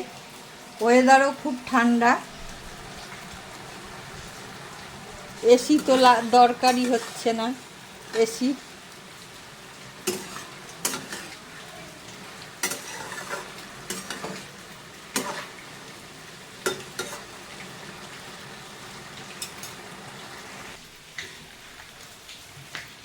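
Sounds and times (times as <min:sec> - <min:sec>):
curry sizzling in a pan: 0:00.0 - 0:23.0
spoon scraping a pan: 0:03.5 - 0:08.5, 0:09.9 - 0:15.8, 0:16.6 - 0:17.4, 0:19.3 - 0:19.8.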